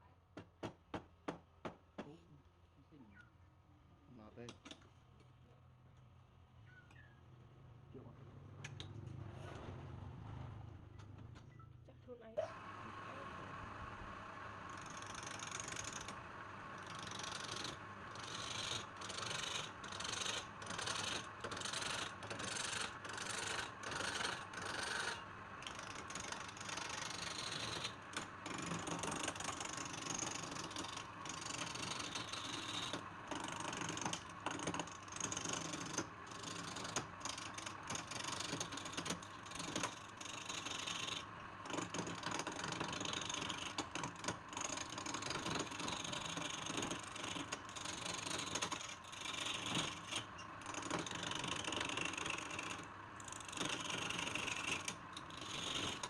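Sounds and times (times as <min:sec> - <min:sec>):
lathe tool scraping wood: 0:14.1 - 0:56.0.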